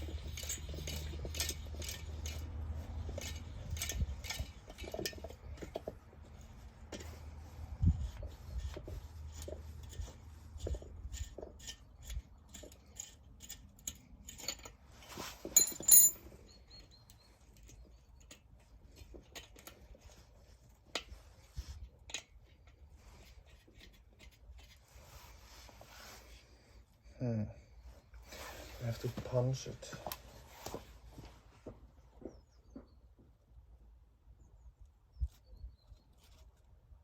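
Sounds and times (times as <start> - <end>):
metal tools clinking: 0.0 - 7.0, 15.4 - 20.1
ringing metallic clink: 15.6 - 16.2.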